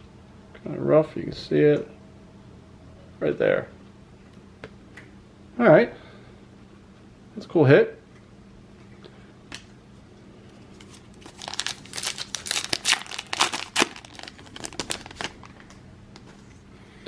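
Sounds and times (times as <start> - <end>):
foil wrapper tearing and crinkling: 10.8 - 15.8.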